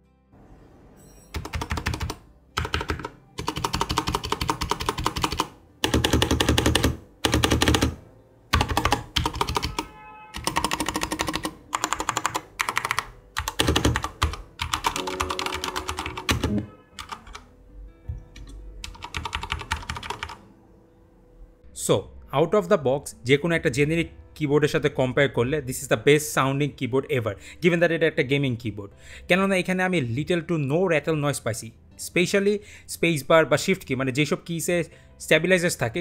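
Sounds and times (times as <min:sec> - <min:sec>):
mechanical keyboard typing: 0:01.3 - 0:09.8, 0:10.4 - 0:17.5, 0:18.4 - 0:20.4.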